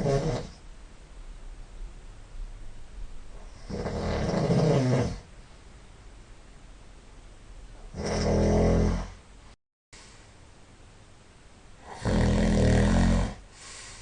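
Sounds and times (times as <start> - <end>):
person snoring loudly: 0.0 - 0.6, 3.6 - 5.3, 7.9 - 9.2, 11.8 - 13.4
quiet breathing: 10.0 - 10.5, 12.8 - 14.0.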